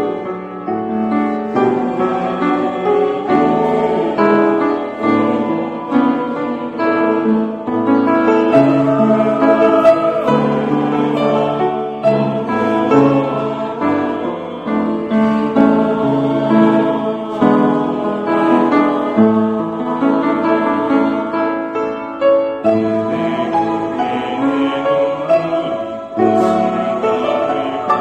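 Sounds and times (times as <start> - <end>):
choir singing a hymn in harmony: 0.0 - 28.0
instrumental accompaniment: 0.0 - 28.0.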